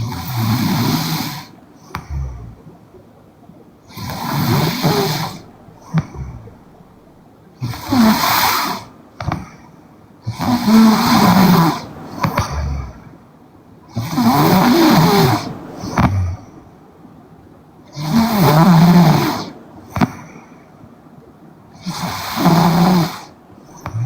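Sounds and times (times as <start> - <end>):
woman snoring: 0.0 - 2.6, 3.9 - 6.7, 7.6 - 9.4, 10.2 - 13.1, 13.9 - 16.4, 17.9 - 20.1, 21.8 - 24.0.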